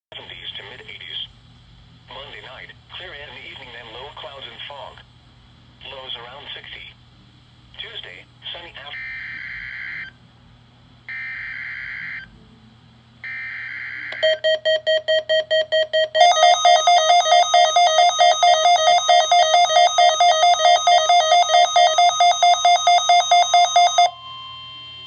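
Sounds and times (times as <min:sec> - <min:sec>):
pulsing electronic alarm beeping: 0:13.3 - 0:25.0.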